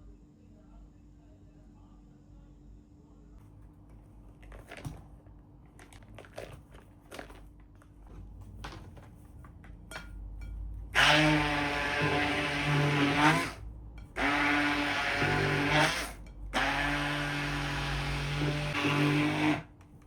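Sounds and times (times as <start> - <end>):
kitchen appliance motor running: 10.9 - 19.7.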